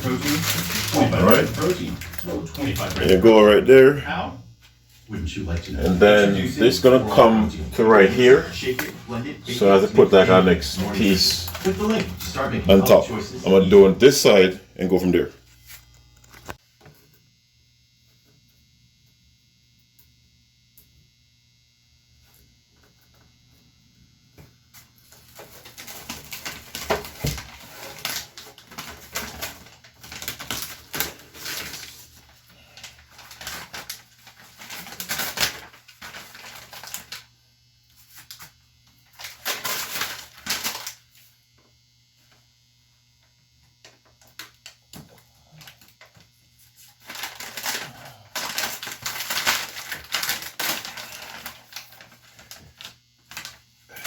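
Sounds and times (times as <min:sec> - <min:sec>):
tiles crinkling and rustling: 0:00.0 - 0:03.2, 0:07.8 - 0:13.1, 0:24.8 - 0:37.3, 0:38.0 - 0:41.3, 0:43.8 - 0:54.0.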